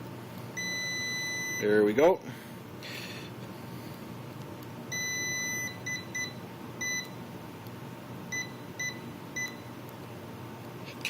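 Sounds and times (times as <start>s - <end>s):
electrical tester beeping: 0.6s - 1.8s, 4.9s - 7.2s, 8.3s - 9.7s.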